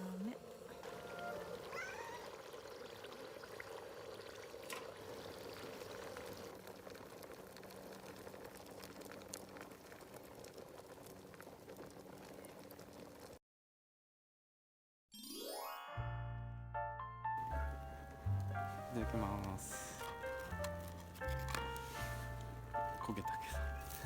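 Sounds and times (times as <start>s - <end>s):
food sizzling over campfire: 0.0s - 13.4s, 17.4s - 24.0s
fire pops and crackles: 4.2s - 13.4s, 17.4s - 24.0s.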